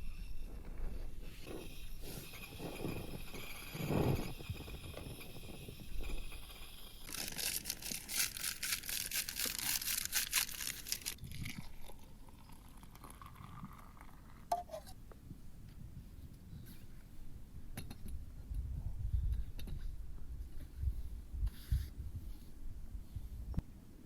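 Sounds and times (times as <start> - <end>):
material crinkling rustle: 7.0 - 11.7.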